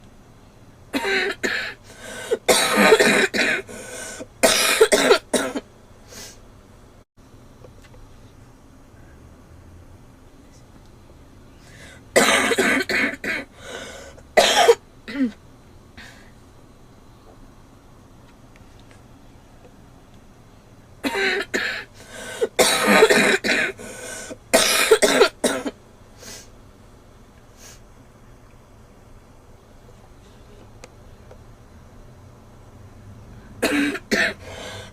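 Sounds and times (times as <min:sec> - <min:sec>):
girl coughing: 0:01.0 - 0:03.7, 0:04.4 - 0:05.6, 0:12.2 - 0:13.5, 0:14.4 - 0:15.4, 0:21.0 - 0:23.8, 0:24.6 - 0:25.8, 0:33.6 - 0:34.4.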